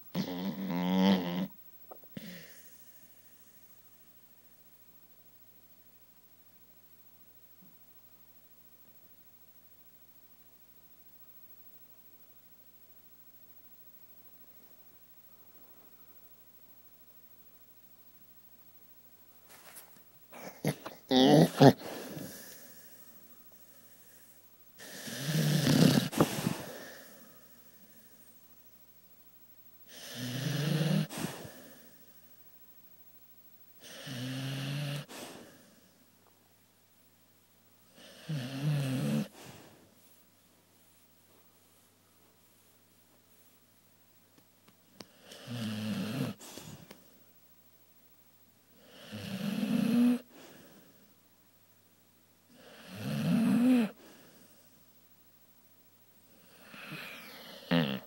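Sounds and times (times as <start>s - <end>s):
dog snoring: 0.1s - 1.5s, 24.8s - 27.1s, 29.9s - 31.9s, 33.8s - 35.8s, 37.9s - 39.7s, 45.0s - 46.8s, 48.8s - 50.4s, 52.5s - 54.3s, 56.4s - 58.0s.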